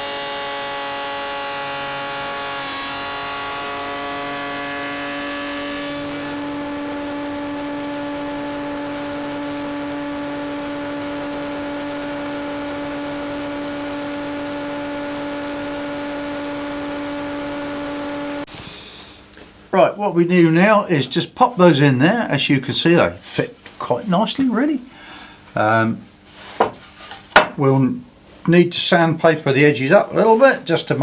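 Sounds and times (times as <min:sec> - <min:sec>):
saw cutting through wood: 0:00.0 - 0:18.5
woodworking machine humming: 0:00.0 - 0:18.8.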